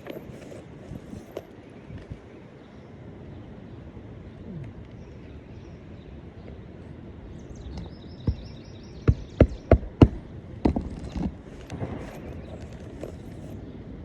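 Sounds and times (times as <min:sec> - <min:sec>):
hammer knocking nails: 0:07.8 - 0:11.3.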